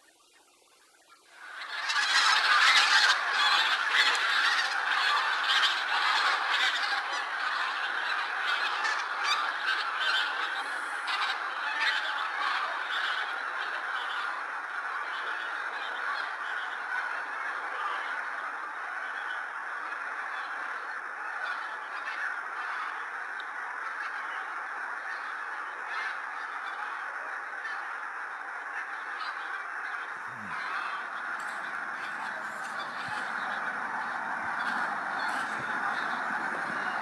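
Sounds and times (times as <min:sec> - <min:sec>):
geese honking: 0:01.4 - 0:17.5, 0:27.5 - 0:37.0.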